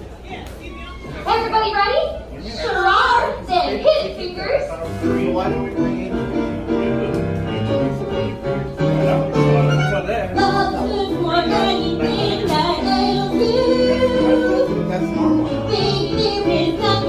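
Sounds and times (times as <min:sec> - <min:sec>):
orchestral strings playing: 0:05.0 - 0:17.0.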